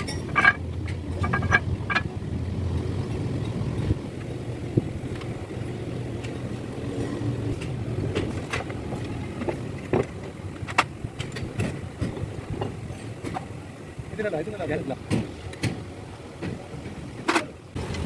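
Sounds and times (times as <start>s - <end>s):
metal tools clinking and knocking: 0.0s - 2.1s
steady low rumble: 0.0s - 13.0s.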